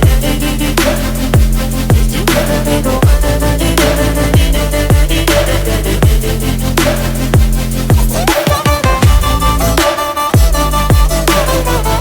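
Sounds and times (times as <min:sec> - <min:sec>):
electronic music with heavy beat: 0:00.0 - 0:12.0.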